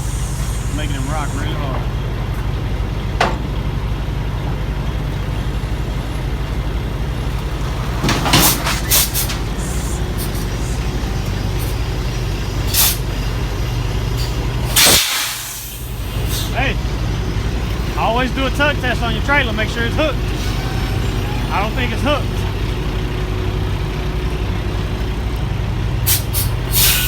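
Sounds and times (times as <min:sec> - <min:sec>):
air brake hisses: 0:00.0 - 0:01.6, 0:08.3 - 0:13.1, 0:14.2 - 0:16.6, 0:26.1 - 0:27.0
diesel truck engine idling: 0:00.0 - 0:27.0.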